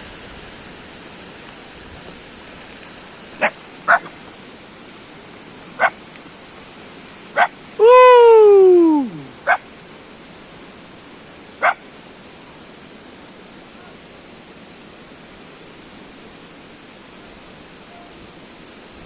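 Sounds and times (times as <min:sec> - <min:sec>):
steady hiss: 0:00.0 - 0:19.0
animal yipping: 0:03.4 - 0:04.1, 0:07.4 - 0:08.0, 0:09.0 - 0:09.6.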